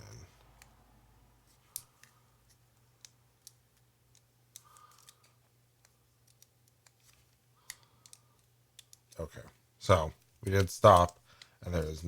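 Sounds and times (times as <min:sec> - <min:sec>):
small clicks and taps: 0:03.0 - 0:09.6.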